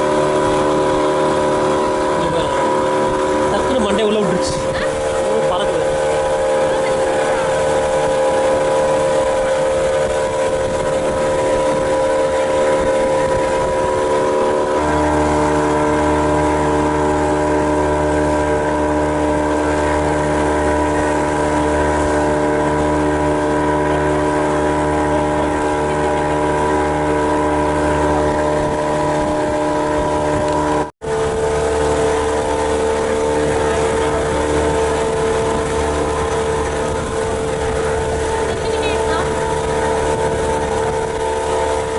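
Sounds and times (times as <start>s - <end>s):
motorboat engine running: 0.0s - 41.9s.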